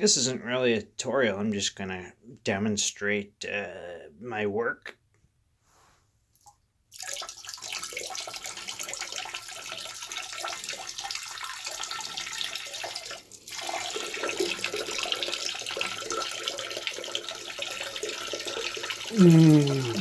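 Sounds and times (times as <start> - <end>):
water running: 7.0 - 20.0.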